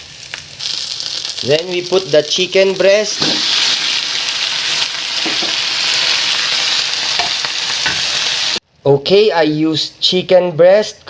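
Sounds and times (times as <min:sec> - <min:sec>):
chicken frying in hot oil: 0:00.0 - 0:08.6.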